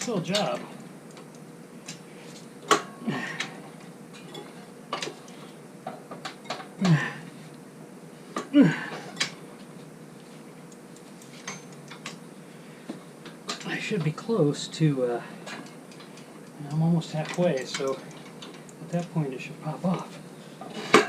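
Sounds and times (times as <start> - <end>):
metal tools clanking on wheel rim: 16.6 - 19.2.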